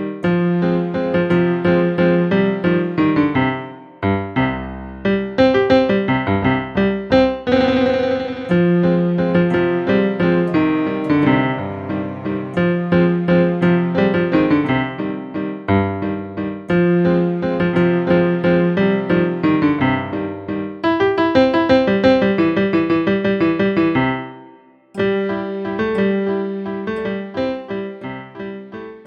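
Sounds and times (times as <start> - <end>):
piano-like keyboard music: 0.0 - 29.0.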